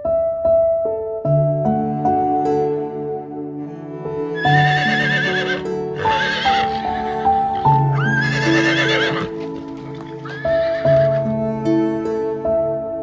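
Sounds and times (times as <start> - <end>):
gentle background music: 0.0 - 13.0
horse whinnying: 4.4 - 11.2.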